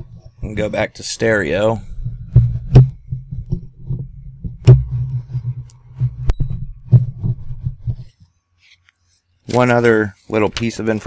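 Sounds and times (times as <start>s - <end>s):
microphone handling bumps: 0.0s - 8.1s.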